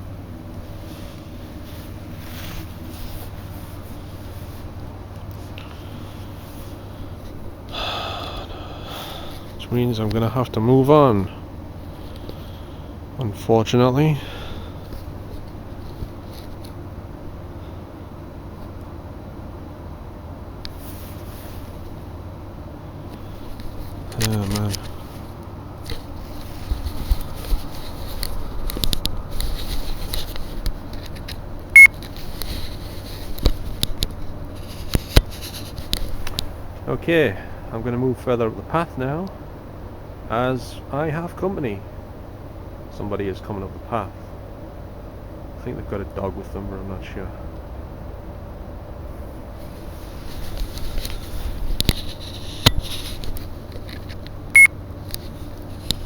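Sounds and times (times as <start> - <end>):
microphone handling clicks: 26.7 - 32.2.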